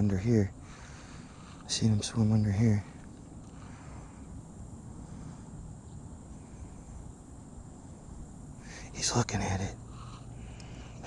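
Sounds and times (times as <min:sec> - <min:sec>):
crickets droning: 0:00.0 - 0:11.0.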